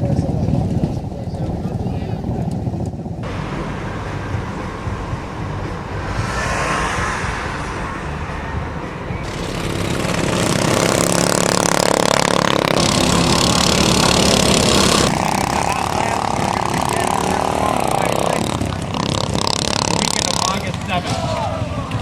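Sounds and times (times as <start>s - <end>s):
lawnmower engines running: 3.0s - 6.0s, 9.2s - 22.0s.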